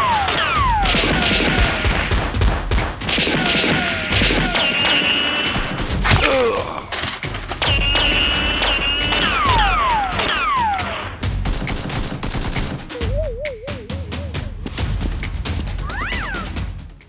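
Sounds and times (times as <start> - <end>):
falling whistling tones: 0.0 - 1.0, 4.6 - 5.8, 7.6 - 10.9, 12.9 - 14.5
rapid gunfire bursts: 0.0 - 13.1.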